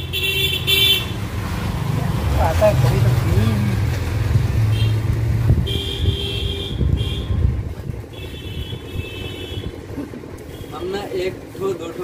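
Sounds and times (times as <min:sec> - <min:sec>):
car horn honking: 0:00.0 - 0:01.2, 0:05.6 - 0:07.5, 0:08.1 - 0:09.8
vehicle engine humming: 0:00.0 - 0:12.0.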